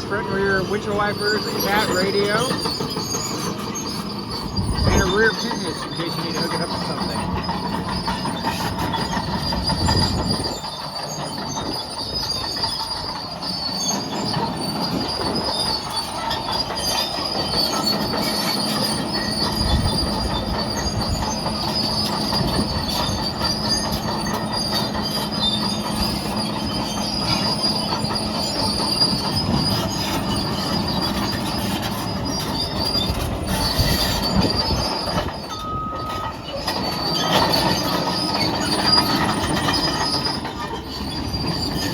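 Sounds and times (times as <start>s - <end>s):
bulldozer diesel engine running: 0.0s - 41.9s
high-pitched undercarriage squeal: 0.0s - 41.9s
steel tracks clattering: 0.0s - 41.9s.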